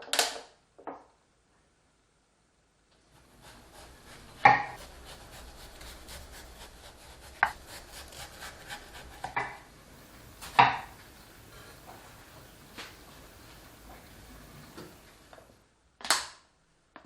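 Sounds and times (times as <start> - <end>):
sharp kitchen knocks and clunks: 10.4 - 11.0.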